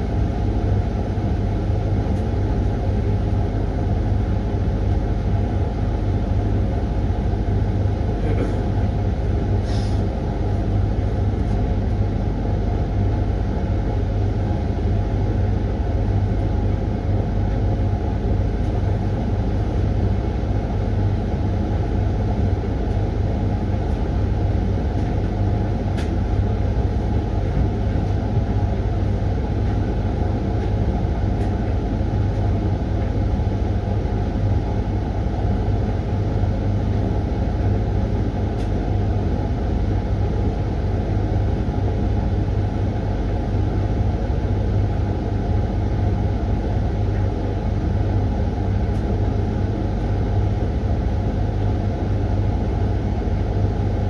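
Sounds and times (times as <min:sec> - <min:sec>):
washing machine running: 0:00.0 - 0:54.0.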